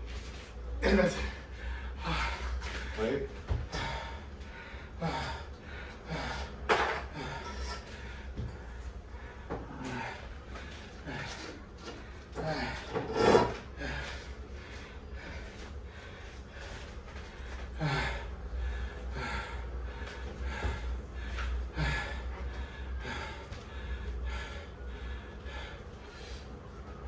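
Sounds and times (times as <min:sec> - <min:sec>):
steady low hum: 0:00.0 - 0:27.0
person grunting: 0:00.8 - 0:01.4
person breathing hard: 0:00.9 - 0:13.0, 0:13.6 - 0:26.7.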